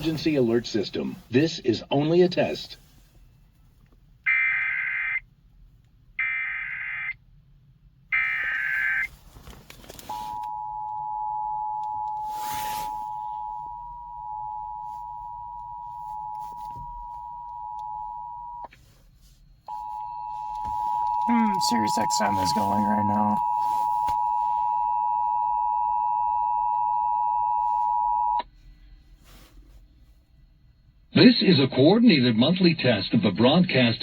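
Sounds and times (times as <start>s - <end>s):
data burst tones: 19.7s - 26.1s
two-tone attention signal: 19.7s - 28.4s.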